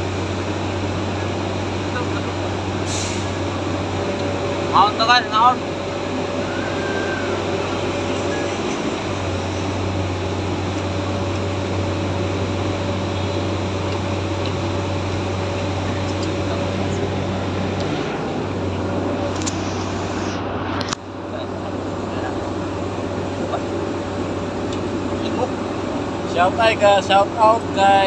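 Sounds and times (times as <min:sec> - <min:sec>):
motor hum: 0:03.4 - 0:20.9.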